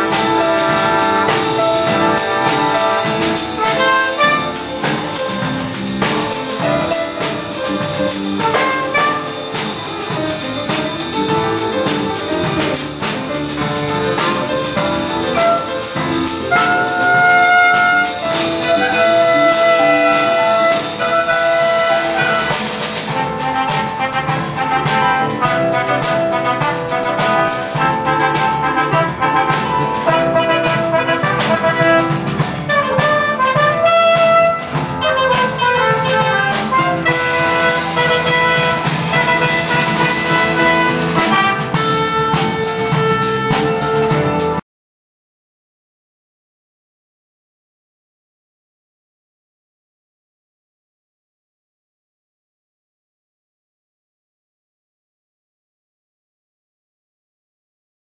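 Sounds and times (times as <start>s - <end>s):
brass and drums music: 0.0s - 44.6s.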